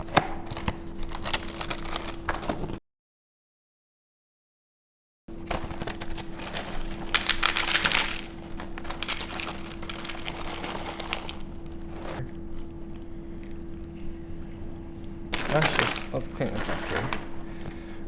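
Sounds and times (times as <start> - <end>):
low hum: 5.3 - 18.0
cereal poured into a bowl: 6.1 - 12.2, 15.4 - 17.3.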